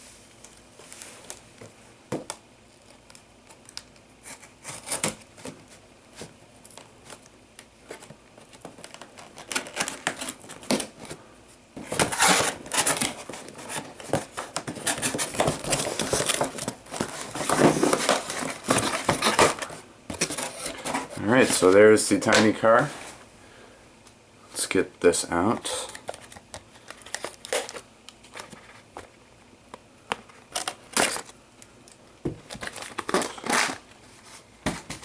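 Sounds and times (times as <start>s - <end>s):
packaging clicks and rustles: 6.6s - 11.2s, 11.8s - 22.6s, 25.8s - 29.2s, 30.1s - 35.0s
packaging crinkling and tearing: 8.0s - 11.1s, 11.8s - 21.7s, 30.2s - 31.4s, 32.5s - 34.0s.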